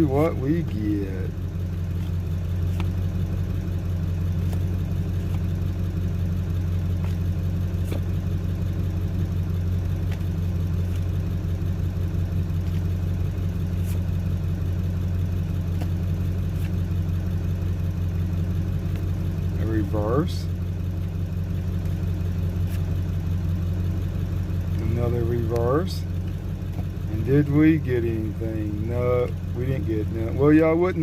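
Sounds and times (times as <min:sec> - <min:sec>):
trading cards clicking: 0:01.9 - 0:03.1.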